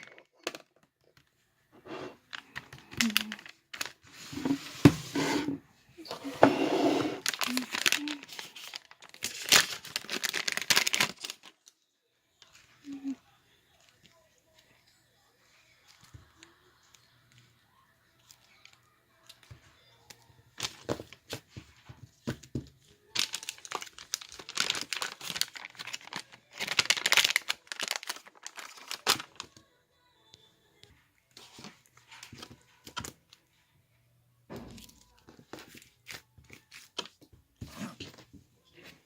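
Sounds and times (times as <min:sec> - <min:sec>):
crinkling and crackling handling: 0:00.0 - 0:11.7, 0:18.2 - 0:29.6.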